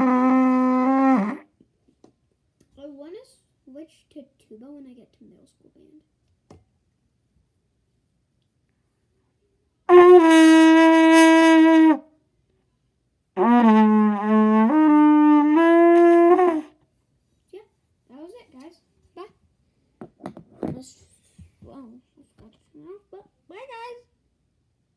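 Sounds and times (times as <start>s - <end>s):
trumpet blowing notes: 0.0s - 1.5s, 9.9s - 12.1s, 13.4s - 16.8s.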